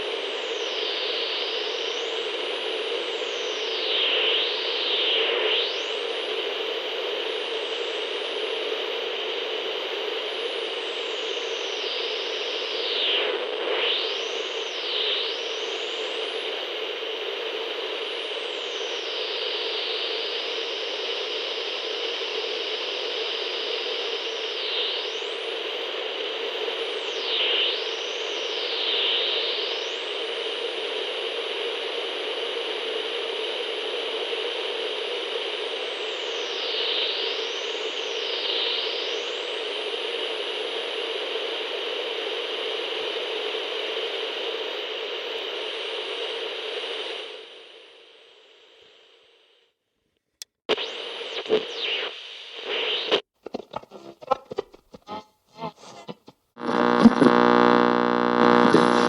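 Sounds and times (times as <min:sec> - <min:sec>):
radio static hiss: 0:00.0 - 0:31.0, 0:50.7 - 0:59.0
radio whistling tones: 0:50.7 - 0:59.0.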